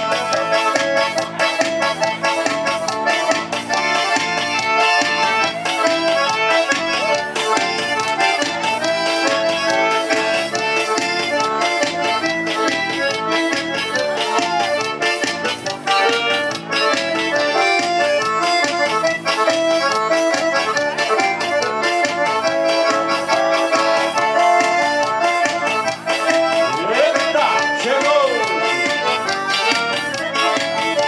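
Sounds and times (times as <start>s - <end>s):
accordion melody: 0.0s - 31.0s
percussion beat: 0.0s - 31.0s
person calling out: 14.0s - 14.9s, 26.7s - 29.2s.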